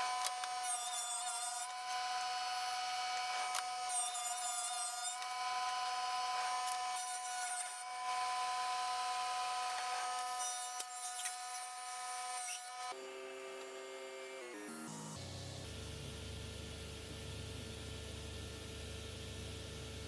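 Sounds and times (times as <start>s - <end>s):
bit cutting wood: 0.0s - 13.0s
router spindle whining: 0.0s - 15.2s.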